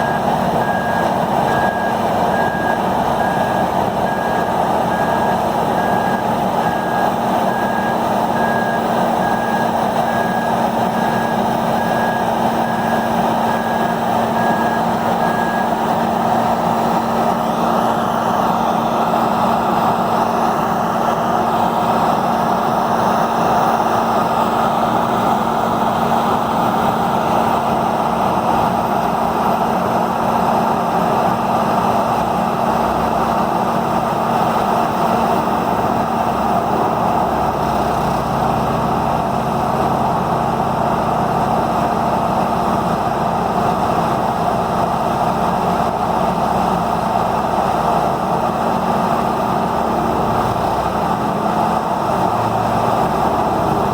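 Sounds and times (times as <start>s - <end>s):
backup alarm beeping: 0.0s - 15.8s.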